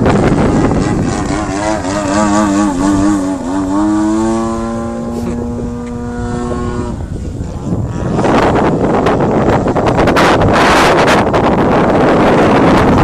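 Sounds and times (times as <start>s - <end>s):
wind buffeting microphone: 0.0s - 13.0s
model plane motor droning: 0.2s - 10.1s.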